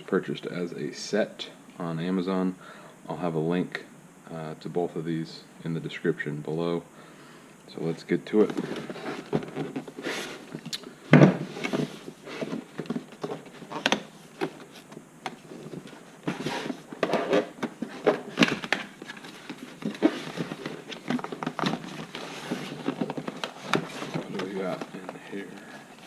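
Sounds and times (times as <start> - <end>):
cardboard rustling and crinkling: 7.9 - 26.0.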